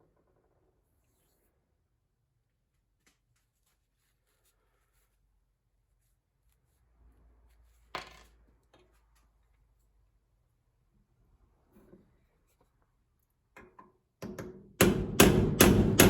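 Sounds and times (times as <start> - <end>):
quiet handling sounds: 2.5 - 14.0.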